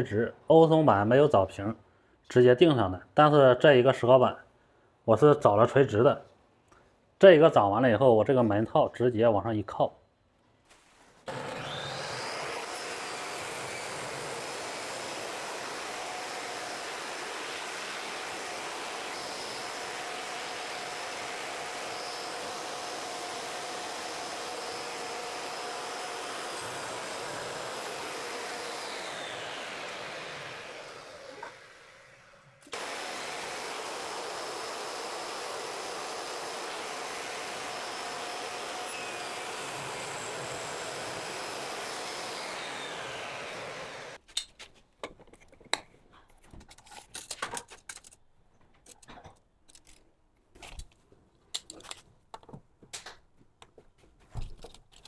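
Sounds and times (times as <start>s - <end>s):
power tool motor running: 11.3s - 44.2s.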